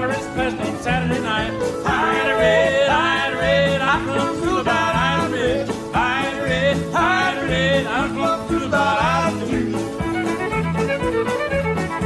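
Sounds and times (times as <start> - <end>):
country band playing: 0.0 - 12.0
sliding vibrato lead melody: 1.8 - 5.6.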